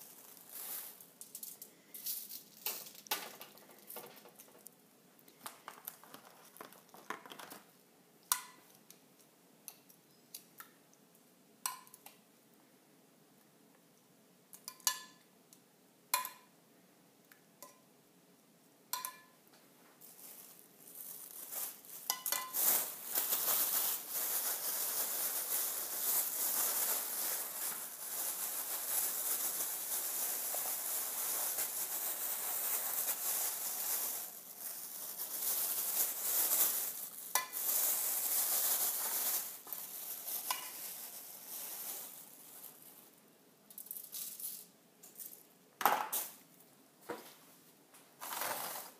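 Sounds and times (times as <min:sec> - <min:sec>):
rustling plastic bag: 0:00.0 - 0:04.7, 0:05.4 - 0:07.7, 0:20.0 - 0:43.2, 0:48.2 - 0:48.9.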